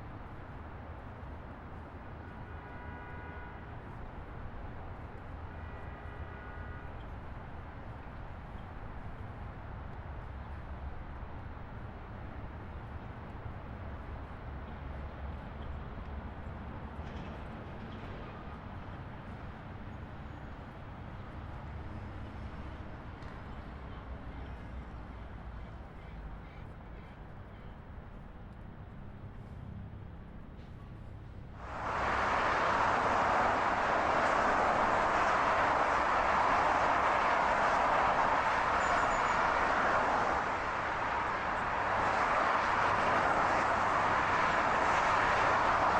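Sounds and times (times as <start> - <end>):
highway traffic rumble: 0.0 - 26.4, 27.2 - 45.9
faint high whine: 31.6 - 45.9.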